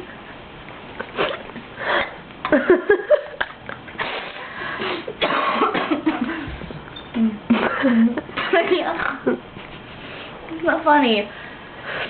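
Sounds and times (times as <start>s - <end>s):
woman coughing: 5.1s - 6.2s.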